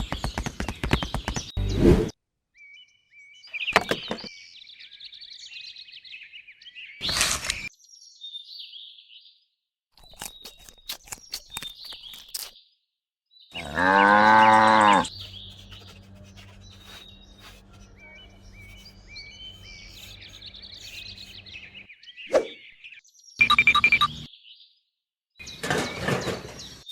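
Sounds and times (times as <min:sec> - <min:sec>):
birds chirping: 0:10.0 - 0:26.9
cow mooing: 0:13.6 - 0:15.1.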